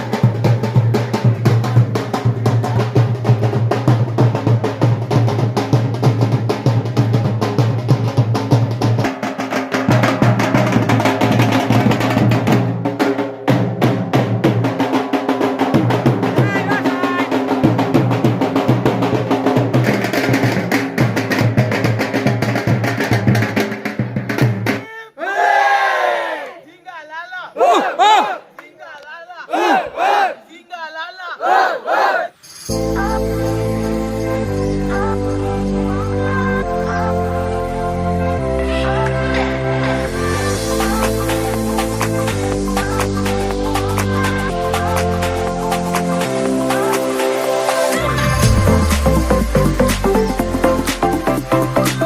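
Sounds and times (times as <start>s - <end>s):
upbeat music with driving drums: 0.0s - 24.8s, 32.7s - 52.0s
group of people shouting: 24.9s - 26.7s, 27.4s - 32.4s.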